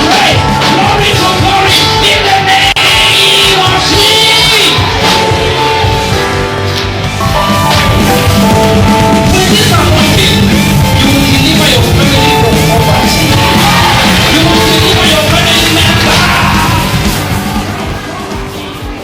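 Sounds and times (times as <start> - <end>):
loud music with heavy bass: 0.0 - 19.0.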